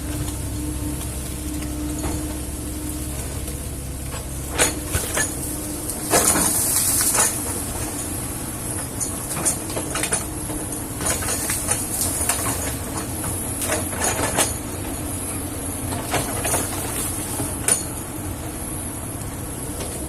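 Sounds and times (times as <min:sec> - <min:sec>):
excavator diesel engine running: 0:00.0 - 0:20.0
metallic clanks and creaks: 0:03.2 - 0:14.7.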